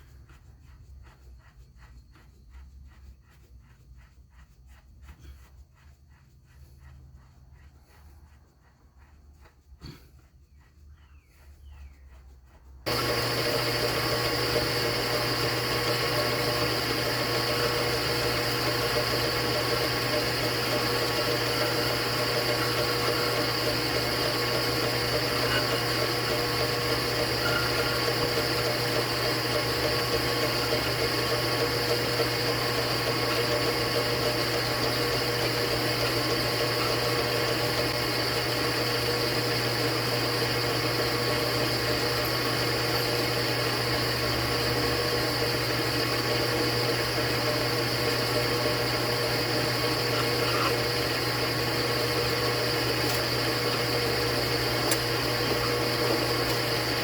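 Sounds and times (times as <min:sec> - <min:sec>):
electric motor humming: 0:12.9 - 0:57.0.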